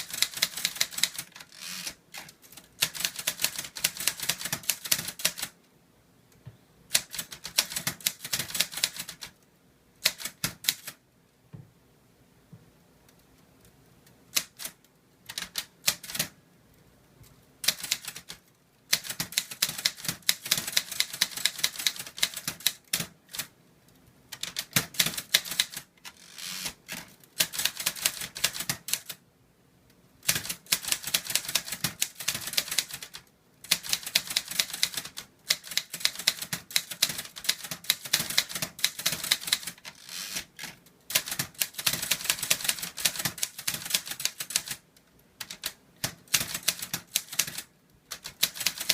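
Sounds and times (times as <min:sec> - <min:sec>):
typewriter keystrokes: 0:00.0 - 0:05.5, 0:06.9 - 0:09.4, 0:10.0 - 0:11.0, 0:14.3 - 0:16.4, 0:17.6 - 0:23.5, 0:24.3 - 0:29.2, 0:30.2 - 0:44.8, 0:45.4 - 0:48.9.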